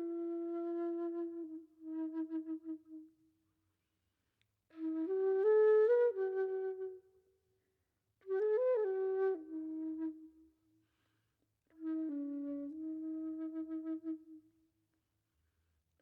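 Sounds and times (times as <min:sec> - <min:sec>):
solo flute melody: 0:00.0 - 0:03.2, 0:04.7 - 0:07.2, 0:08.2 - 0:10.6, 0:11.7 - 0:14.6.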